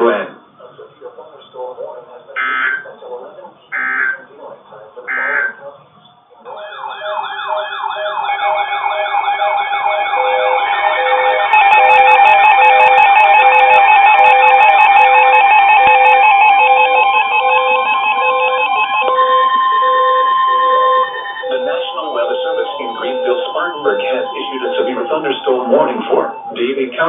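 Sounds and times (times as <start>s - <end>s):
steady alarm tones: 2.2s - 5.8s, 6.5s - 27.0s
alarm beeps: 2.4s - 2.9s, 3.7s - 4.2s, 5.1s - 5.7s, 6.5s - 27.0s
rising siren sweep: 5.1s - 5.7s, 6.5s - 26.7s.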